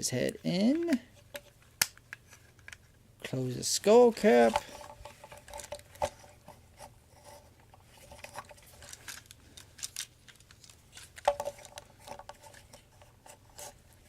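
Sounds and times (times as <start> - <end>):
plastic toy parts clicking: 8.2 - 12.6.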